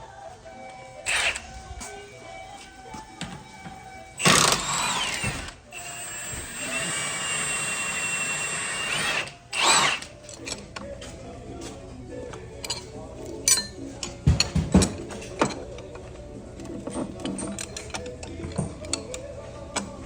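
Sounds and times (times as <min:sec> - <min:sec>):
power tool whining: 0:01.0 - 0:01.5, 0:04.2 - 0:10.2.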